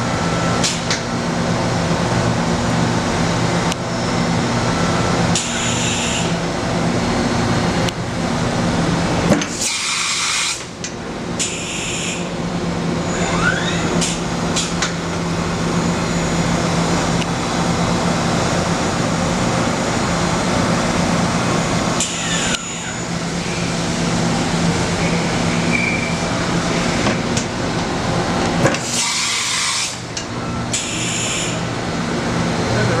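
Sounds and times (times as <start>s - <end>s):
machining center humming: 10.6s - 33.0s.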